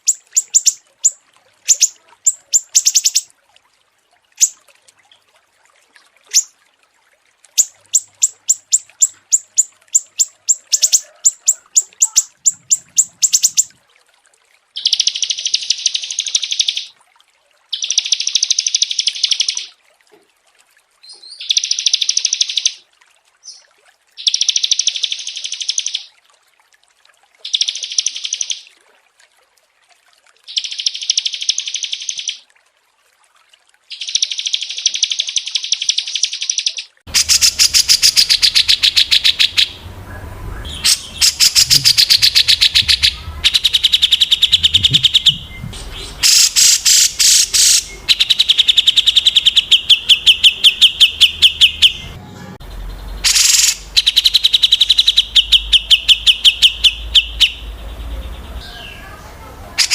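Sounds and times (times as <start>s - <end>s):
songbirds chipping: 0.0s - 3.3s, 7.6s - 13.8s, 35.5s - 59.9s.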